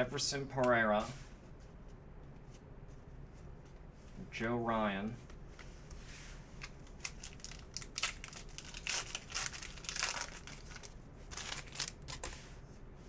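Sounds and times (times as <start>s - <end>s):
cards and plastic packaging crinkling: 6.6s - 12.4s.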